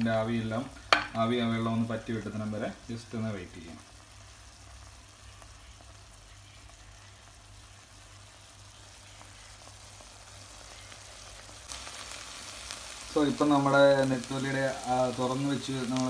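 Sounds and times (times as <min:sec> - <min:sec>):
food sizzling softly in a pan: 0:00.0 - 0:16.0.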